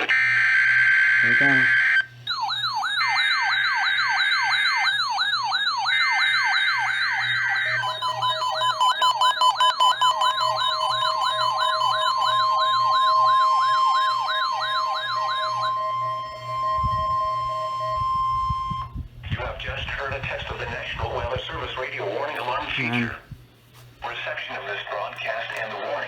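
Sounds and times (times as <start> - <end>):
steady warning alarm tone: 0.0 - 19.0, 22.4 - 23.2
warbling siren alarms: 0.0 - 19.1.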